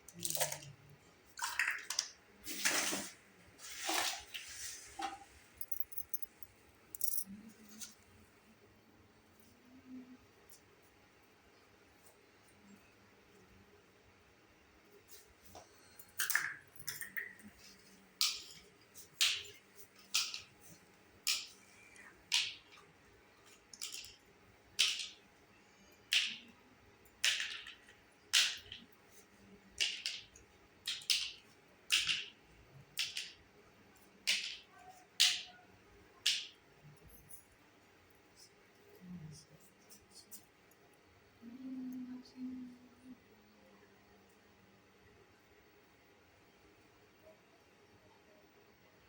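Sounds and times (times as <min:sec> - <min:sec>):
plastic toy pieces clicking: 0:23.7 - 0:24.2, 0:24.8 - 0:25.2, 0:29.8 - 0:32.4, 0:33.0 - 0:33.4.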